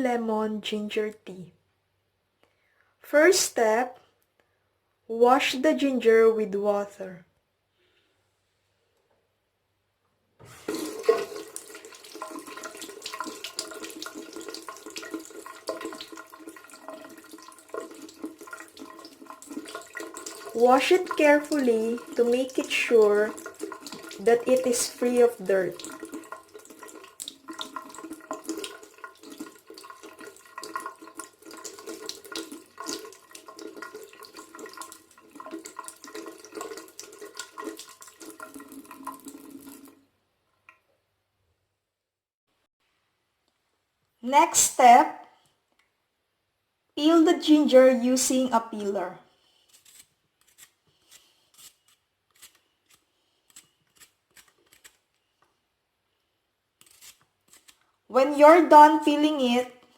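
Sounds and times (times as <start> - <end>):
tap water running into a sink: 10.4 - 40.0
peeler scraping ginger: 49.5 - 55.1, 56.8 - 57.8.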